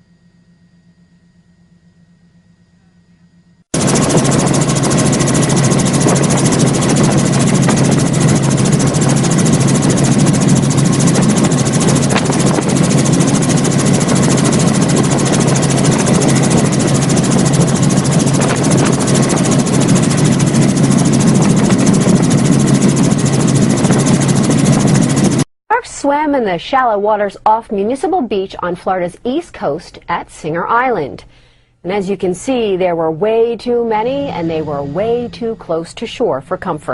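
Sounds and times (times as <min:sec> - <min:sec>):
aircraft engine noise: 0:02.8 - 0:25.5, 0:32.3 - 0:36.8.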